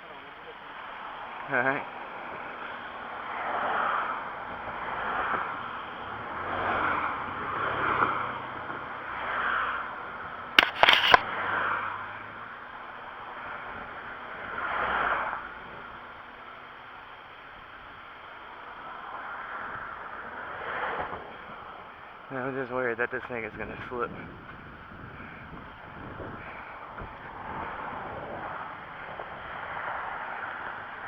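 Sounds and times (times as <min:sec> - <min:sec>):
highway traffic whooshing past: 0:02.2 - 0:10.5, 0:24.6 - 0:31.0
sharp clatter: 0:10.6 - 0:11.2.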